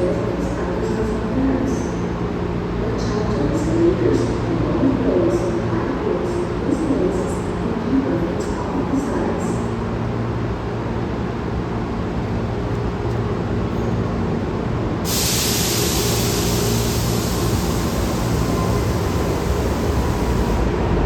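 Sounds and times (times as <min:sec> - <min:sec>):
jet airliner rumble: 0:14.5 - 0:21.0
loud high hiss: 0:15.1 - 0:20.7.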